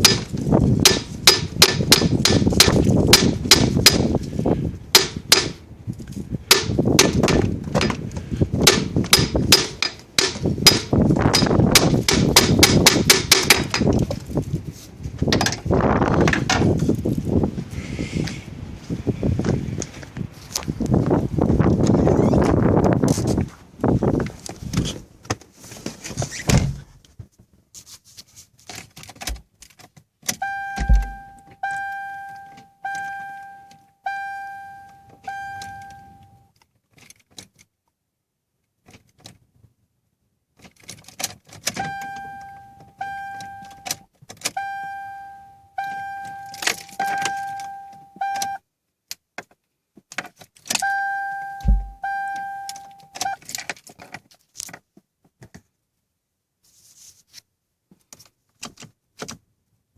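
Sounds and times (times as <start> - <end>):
low thuds: 26.5 - 27.0, 30.8 - 31.5, 51.6 - 52.1
car warning chime dinging: 30.4 - 36.5, 41.8 - 44.0, 44.6 - 48.6, 50.8 - 53.4.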